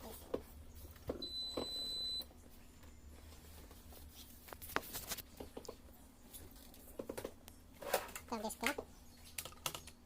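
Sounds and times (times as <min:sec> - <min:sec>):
laptop high beep: 0:01.2 - 0:02.2.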